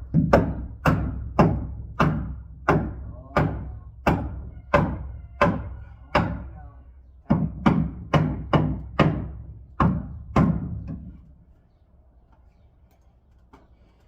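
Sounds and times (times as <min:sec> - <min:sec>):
heavy ringing knocks: 0:00.1 - 0:06.5.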